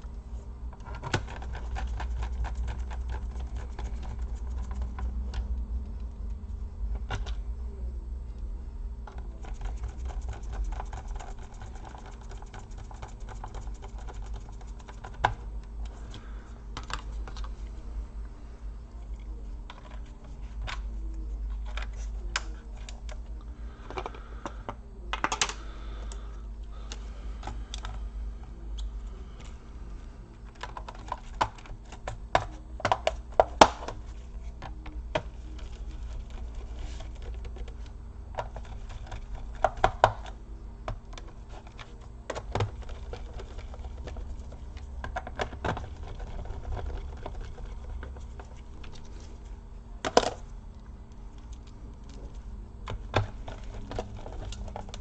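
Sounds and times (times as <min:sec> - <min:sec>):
steady low hum: 0:00.0 - 0:55.0
laptop parts clicking and tapping: 0:30.5 - 0:49.1, 0:52.8 - 0:55.0.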